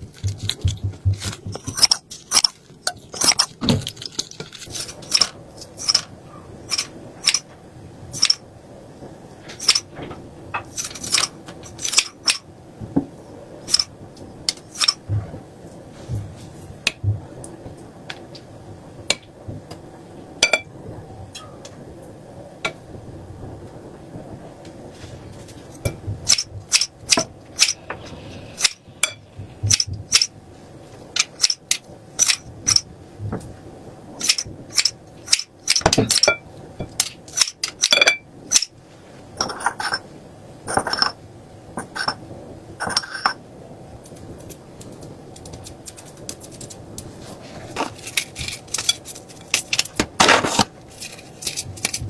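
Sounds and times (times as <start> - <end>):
utensils and dishes clinking: 0.0 - 6.1, 6.7 - 7.5, 8.1 - 8.4, 9.5 - 9.9, 10.6 - 12.4, 13.7 - 13.9, 14.5 - 15.0, 20.4 - 20.7, 25.7 - 30.3, 31.2 - 31.6, 32.2 - 32.9, 34.2 - 38.7, 39.4 - 40.1, 40.7 - 41.2, 41.8 - 42.2, 42.8 - 43.4, 47.7 - 52.0.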